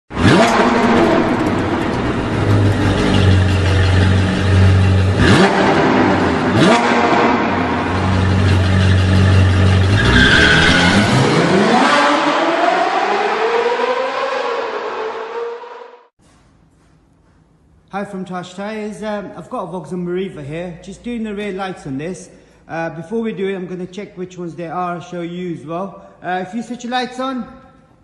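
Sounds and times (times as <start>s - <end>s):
car engine revving: 0.1s - 16.1s.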